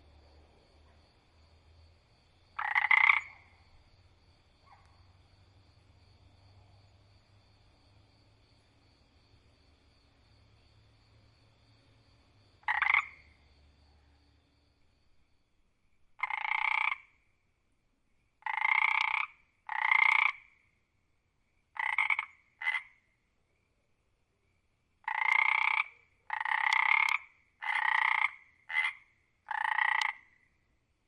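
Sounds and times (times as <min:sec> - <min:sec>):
frog croaking: 0:02.4 - 0:03.8, 0:12.6 - 0:13.4, 0:16.2 - 0:17.2, 0:18.4 - 0:20.6, 0:21.8 - 0:23.1, 0:25.0 - 0:30.5.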